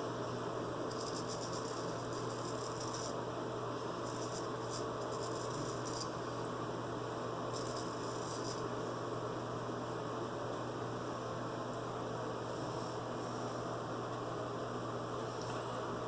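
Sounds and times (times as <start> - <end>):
low electrical hum: 0.0 - 16.0
razor scraping stubble: 0.9 - 3.2, 4.0 - 6.2, 7.5 - 8.6.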